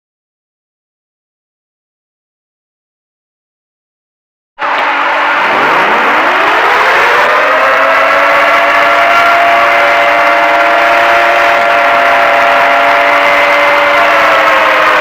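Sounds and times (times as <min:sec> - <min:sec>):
siren wailing: 0:04.6 - 0:15.0.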